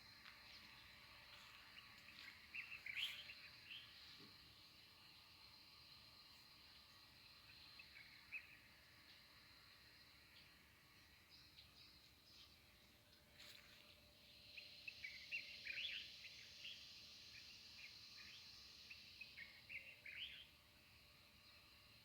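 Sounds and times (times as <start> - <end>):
songbirds chirping: 0.0 - 22.0.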